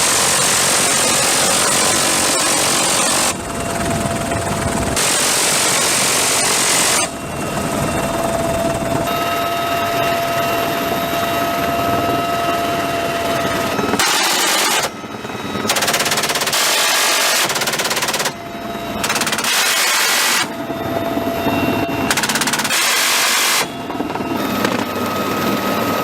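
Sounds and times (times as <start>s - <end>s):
helicopter engine whine: 0.0s - 26.0s
rapid minigun fire: 14.0s - 15.0s, 15.7s - 18.4s, 19.0s - 20.5s, 22.1s - 23.7s.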